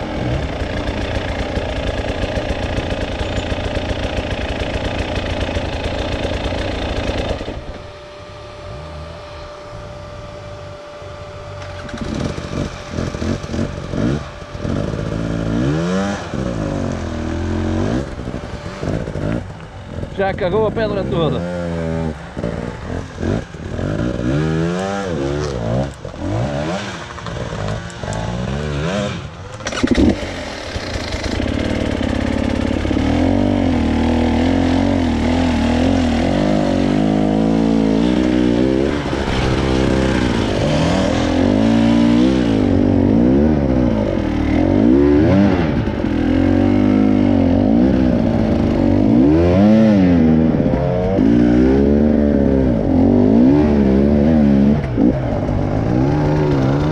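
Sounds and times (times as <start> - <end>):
off-road vehicle engine revving: 0.0 - 56.9.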